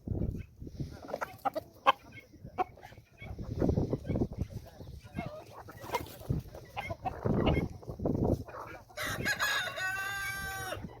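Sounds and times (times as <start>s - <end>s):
chickens clucking: 0.0s - 11.0s
rooster crowing: 9.0s - 10.8s.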